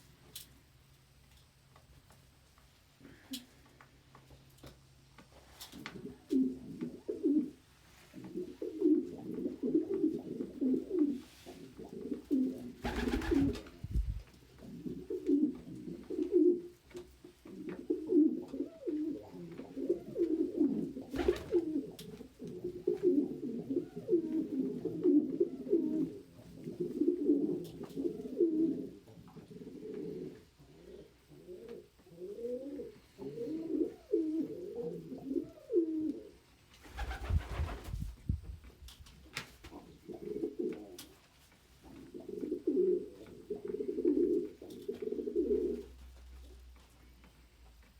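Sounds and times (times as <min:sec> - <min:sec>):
pigeons cooing: 0:05.8 - 0:07.6, 0:08.2 - 0:16.8, 0:17.4 - 0:36.4, 0:39.8 - 0:41.0, 0:41.9 - 0:46.0.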